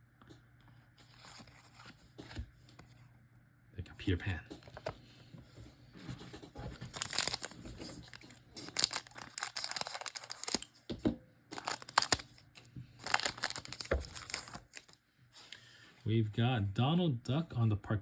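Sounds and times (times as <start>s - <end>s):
card pack wrapper tearing: 6.8s - 10.8s, 11.5s - 15.0s.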